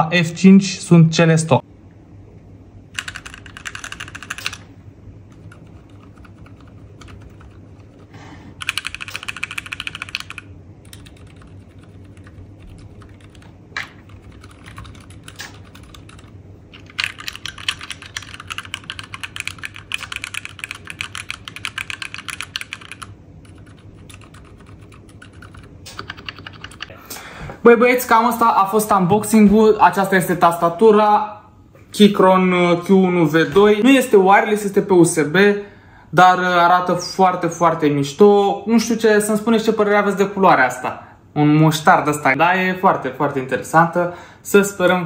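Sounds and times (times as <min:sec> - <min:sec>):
mechanical keyboard clicks: 0:03.0 - 0:04.6, 0:08.6 - 0:26.9.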